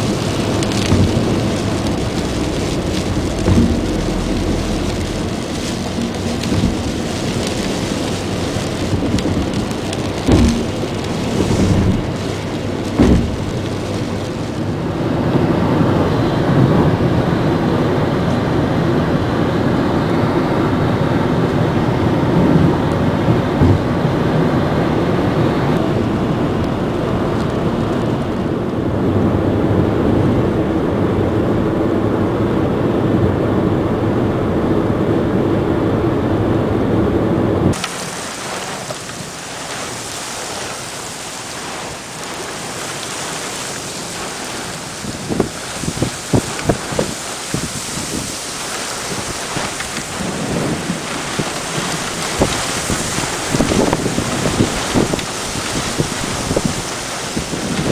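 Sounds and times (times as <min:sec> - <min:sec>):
heavy rain pouring: 0:00.0 - 0:57.9
thunder rumbling: 0:00.0 - 0:57.9
sharp knocks: 0:03.2 - 0:06.9, 0:10.2 - 0:12.1, 0:12.9 - 0:13.9.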